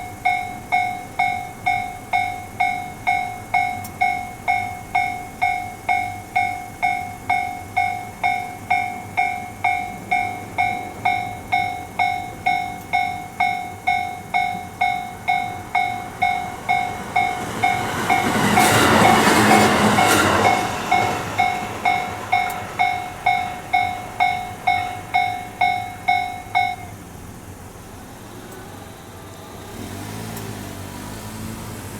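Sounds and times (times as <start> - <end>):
level-crossing alarm dinging: 0.0 - 30.0
train passing: 0.0 - 31.9.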